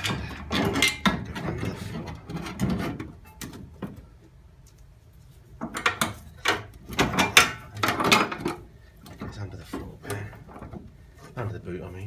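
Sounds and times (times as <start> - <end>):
metal parts knocking and clanking: 0.0 - 4.0, 5.6 - 10.9.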